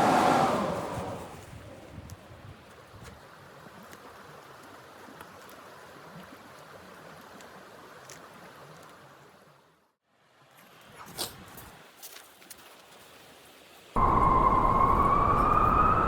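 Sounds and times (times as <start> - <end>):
blizzard wind blowing: 0.0 - 2.5, 14.0 - 16.0.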